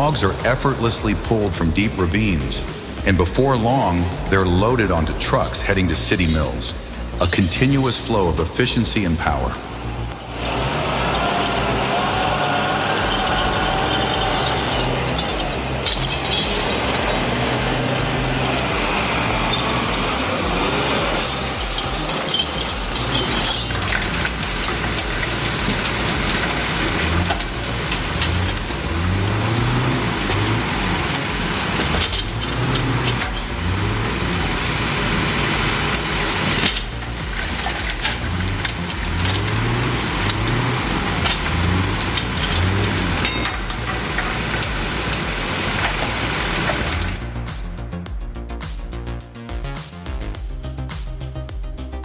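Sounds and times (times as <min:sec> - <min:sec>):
heavy vehicle engine running: 0:00.0 - 0:48.2
music: 0:00.0 - 0:52.0
clanks and knocks: 0:13.0 - 0:47.3.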